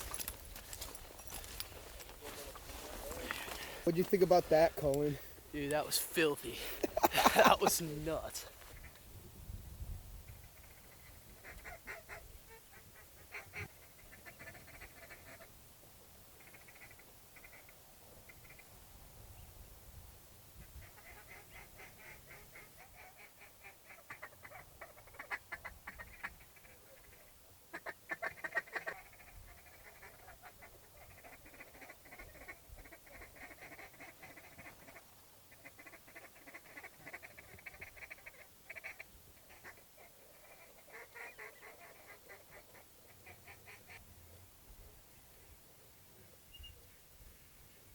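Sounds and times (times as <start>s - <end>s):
flock of wigeon whistling: 46.5s - 46.9s.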